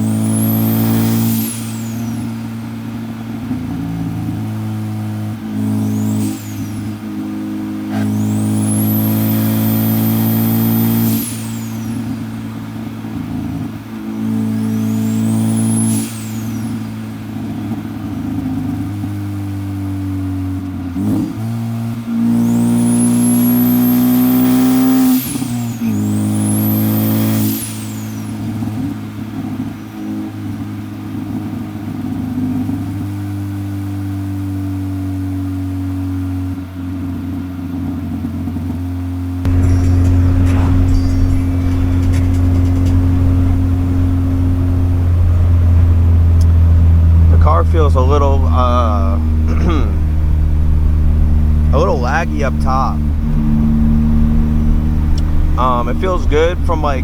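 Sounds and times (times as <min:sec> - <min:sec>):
high turbo whistle: 0:00.0 - 0:18.0, 0:22.2 - 0:29.1, 0:39.5 - 0:57.0
car engine pulling hard: 0:00.0 - 0:57.0.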